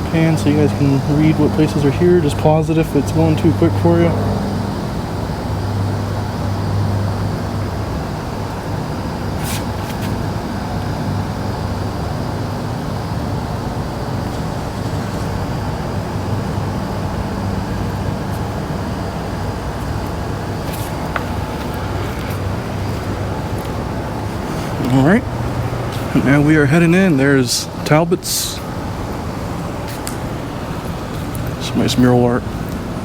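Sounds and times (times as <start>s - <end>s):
low hum: 0.0s - 8.2s
road traffic: 0.0s - 33.0s.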